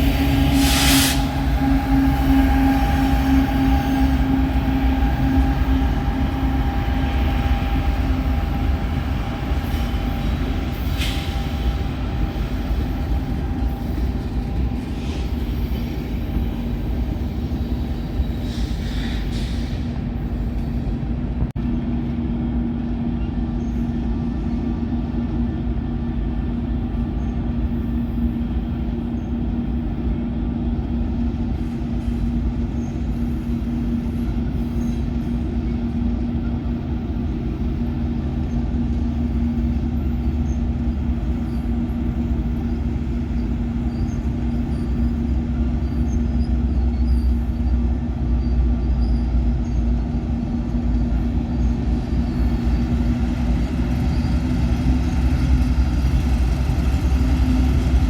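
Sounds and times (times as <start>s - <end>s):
diesel train rumbling: 0.0s - 58.0s.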